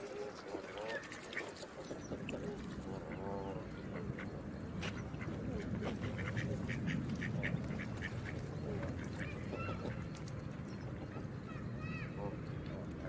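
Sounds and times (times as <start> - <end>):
running water: 0.0 - 3.1.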